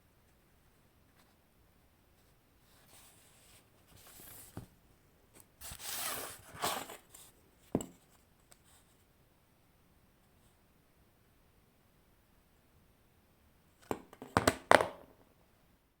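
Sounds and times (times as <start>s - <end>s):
rustling and scraping: 2.2s - 4.8s, 5.4s - 8.9s.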